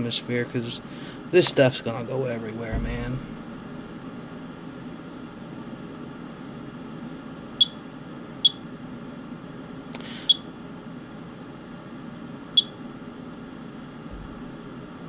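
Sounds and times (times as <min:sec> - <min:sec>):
steady low hum: 0:00.0 - 0:15.0
geiger counter chirping: 0:07.6 - 0:08.6, 0:10.2 - 0:10.5, 0:12.6 - 0:12.8.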